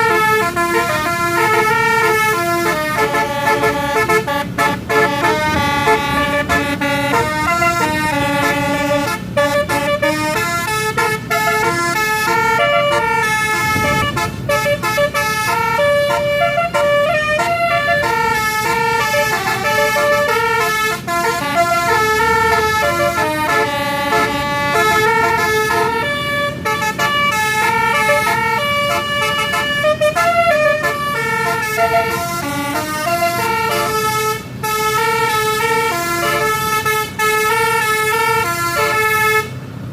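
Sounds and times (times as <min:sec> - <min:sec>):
multi-trumpet air horn tune: 0:00.0 - 0:39.5.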